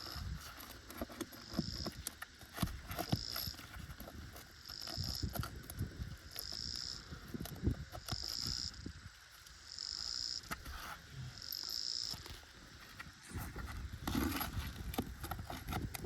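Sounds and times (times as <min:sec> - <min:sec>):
hand tools scraping shingles: 0:12.2 - 0:16.0.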